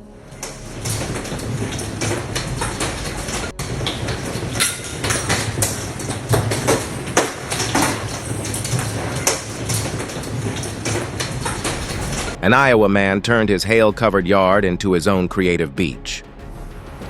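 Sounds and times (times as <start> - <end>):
hailstones clattering on a house: 0.4 - 12.4.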